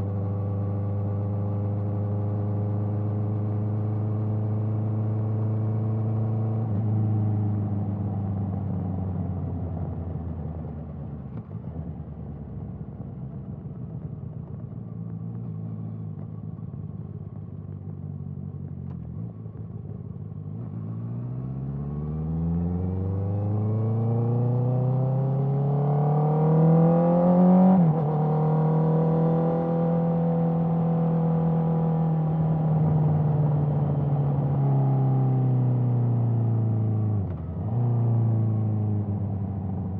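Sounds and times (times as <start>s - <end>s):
motorcycle engine accelerating: 13.4s - 39.9s.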